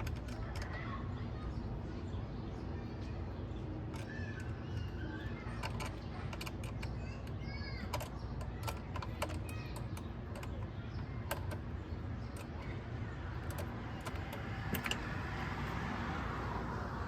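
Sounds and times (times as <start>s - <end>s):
light clicks and taps: 3.8s - 15.8s.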